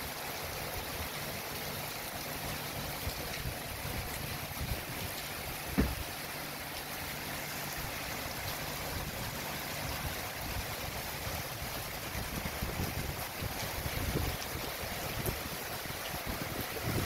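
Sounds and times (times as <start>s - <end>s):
rain: 0.0s - 17.0s
storm wind: 3.0s - 6.2s, 8.9s - 17.0s
thump: 5.7s - 6.0s.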